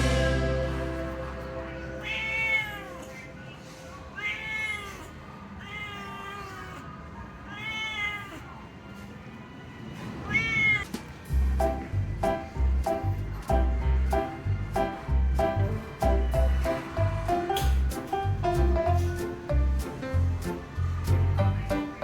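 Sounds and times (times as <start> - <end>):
background music: 0.0 - 3.4, 11.3 - 22.0
cat meowing: 2.0 - 3.3, 4.2 - 8.7, 10.2 - 11.0.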